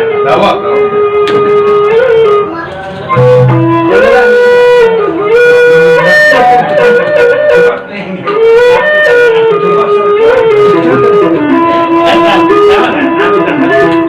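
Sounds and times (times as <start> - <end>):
flute-like melody: 0.0 - 2.5, 3.1 - 14.0
struck percussion accents: 3.1 - 4.9.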